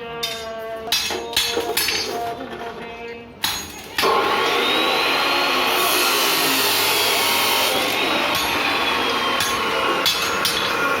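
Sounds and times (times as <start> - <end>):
grinder scraping: 3.8 - 11.0
angle grinder whining: 3.9 - 11.0.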